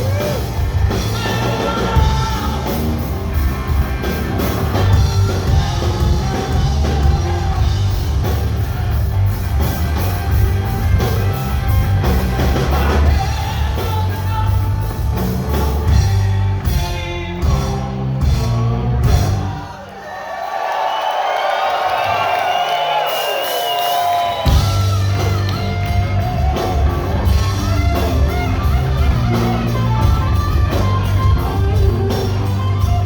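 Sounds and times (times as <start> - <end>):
person singing: 0.0 - 3.2, 4.4 - 8.5, 12.6 - 19.9
electric guitars: 0.0 - 19.6, 24.2 - 33.0
live rock band playing: 0.0 - 19.8, 22.9 - 33.0
drums: 0.0 - 33.0.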